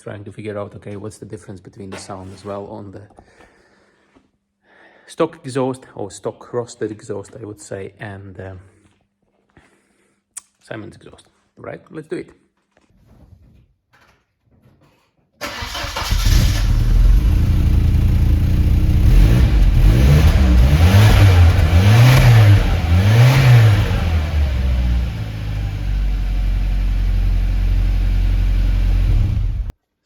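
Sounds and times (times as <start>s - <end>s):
car engine starting and revving: 15.4s - 29.7s.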